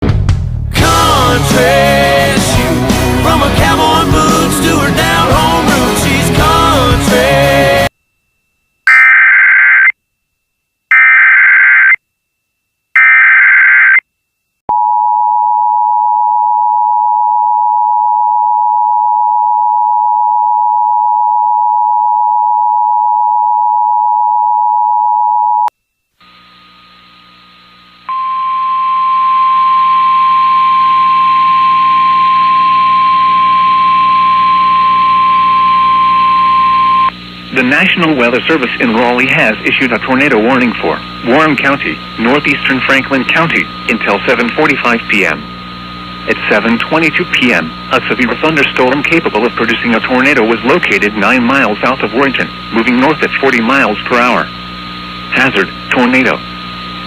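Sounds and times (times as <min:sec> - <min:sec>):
low hum: 0:26.4 - 0:52.8
two-tone attention signal: 0:28.1 - 0:37.1
radio hiss: 0:34.2 - 0:57.0.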